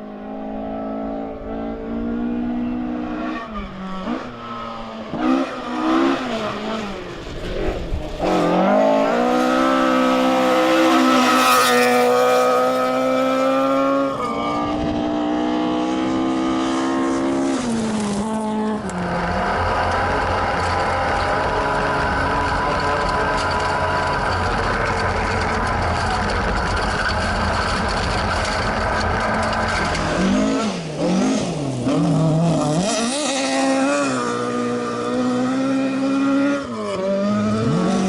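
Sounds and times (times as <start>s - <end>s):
rally car engine revving: 0.0s - 38.0s.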